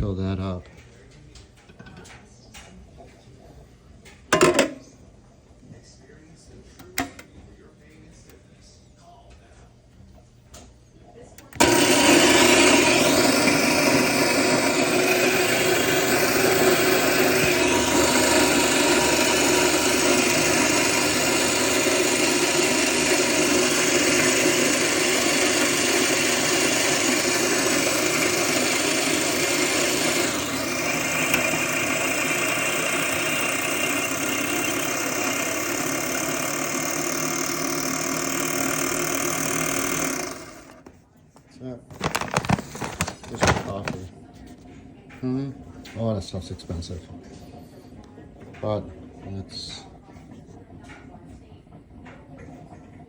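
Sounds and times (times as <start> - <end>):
coffee grinder grinding beans: 11.5 - 41.0, 41.9 - 44.1.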